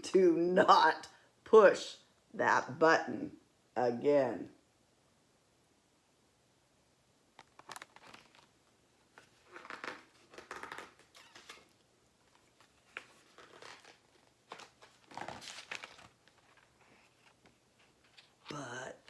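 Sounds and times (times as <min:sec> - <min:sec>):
paper pages rustling: 0:07.4 - 0:18.5.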